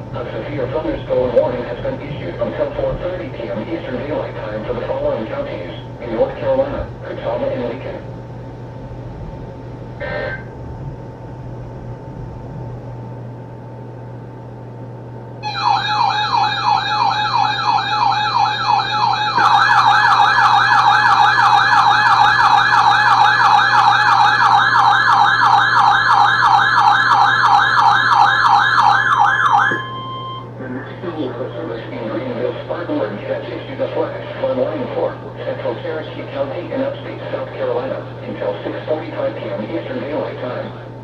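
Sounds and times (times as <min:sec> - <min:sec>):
faint steady hum: 0:00.0 - 0:41.0
warbling electronic alert siren: 0:15.4 - 0:30.5.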